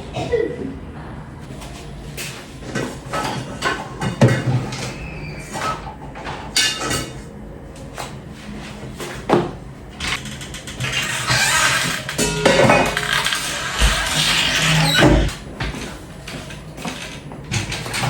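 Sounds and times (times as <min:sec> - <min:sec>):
dishes and utensils clinking: 0:01.6 - 0:07.3, 0:10.9 - 0:18.0.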